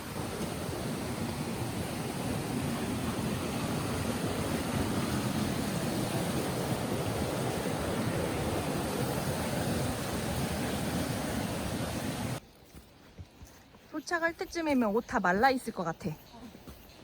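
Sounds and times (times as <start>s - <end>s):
stream water rushing: 0.0s - 12.4s.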